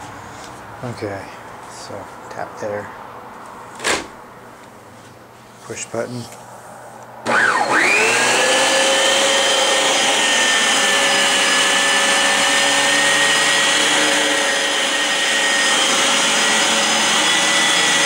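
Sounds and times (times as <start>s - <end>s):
vacuum cleaner running: 7.2s - 18.0s.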